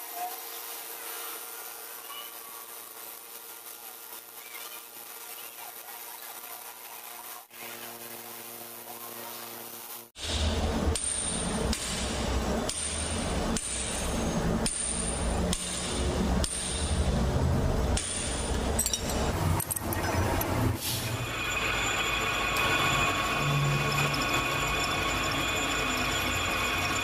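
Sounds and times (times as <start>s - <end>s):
steady running machine: 0.0s - 27.0s
low machine hum: 7.5s - 27.0s.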